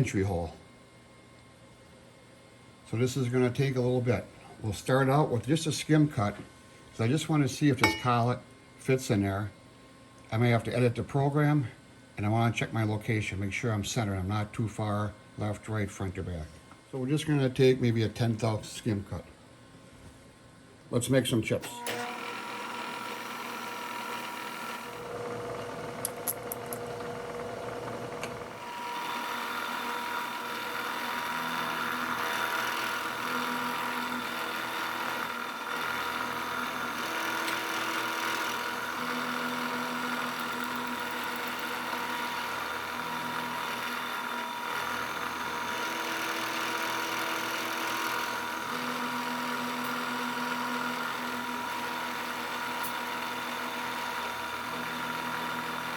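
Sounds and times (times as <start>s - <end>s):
milling machine whine: 21.6s - 55.9s.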